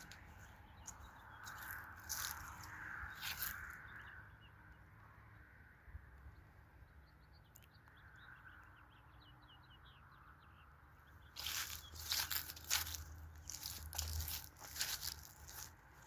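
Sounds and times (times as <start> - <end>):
loud crunching: 0.0 - 3.8, 11.4 - 16.0
faint outdoor ambience: 0.0 - 16.0
bird chirps: 6.8 - 15.7.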